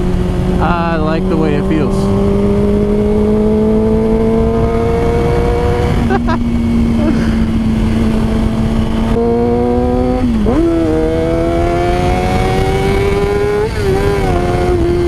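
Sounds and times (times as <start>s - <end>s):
motorcycle engine running: 0.0s - 11.6s.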